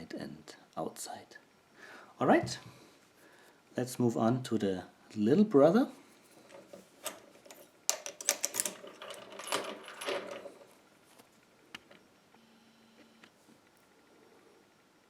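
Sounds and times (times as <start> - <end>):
padlocks and chain rattling: 6.4 - 10.8.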